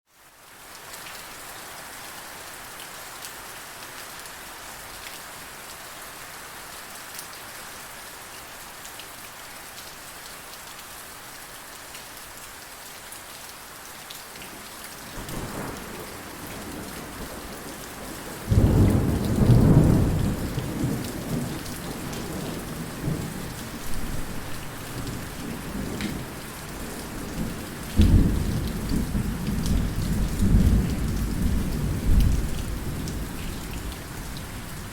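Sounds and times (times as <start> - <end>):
heavy rain: 0.1 - 34.9.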